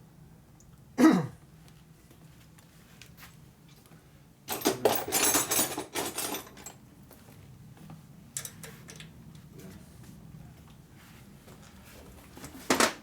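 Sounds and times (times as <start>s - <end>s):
metal tools clinking and rattling: 4.5s - 6.8s.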